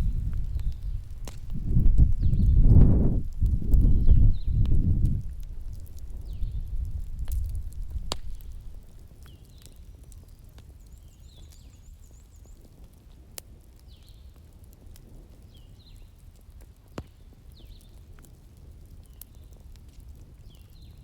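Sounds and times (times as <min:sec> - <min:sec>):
thunder rumbling: 0:00.0 - 0:08.9
wood fire crackling and popping: 0:00.0 - 0:21.0.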